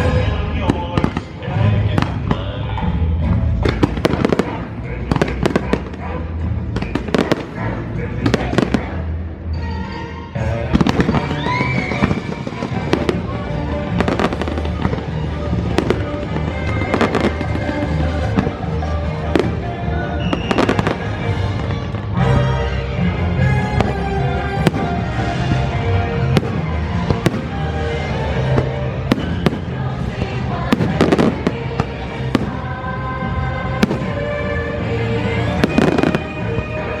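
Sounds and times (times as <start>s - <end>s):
music soundtrack: 0.0s - 37.0s
fireworks bursting: 3.6s - 6.0s, 10.8s - 22.2s, 23.7s - 36.9s
whistling glide: 20.2s - 20.7s.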